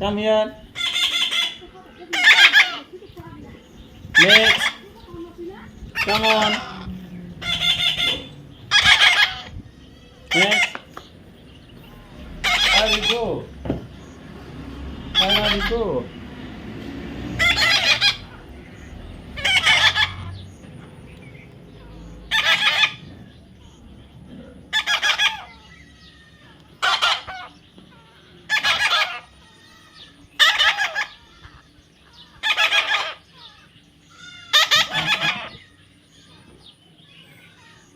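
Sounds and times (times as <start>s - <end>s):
parrot harsh call: 0.7s - 3.0s, 4.1s - 4.9s, 5.9s - 11.0s, 12.0s - 13.5s, 15.0s - 16.0s, 17.4s - 20.5s, 21.8s - 23.8s, 24.7s - 36.4s.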